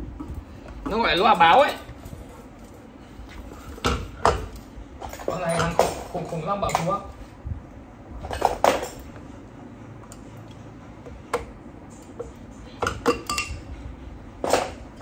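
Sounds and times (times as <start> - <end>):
metal hardware clinking: 5.0 - 6.8.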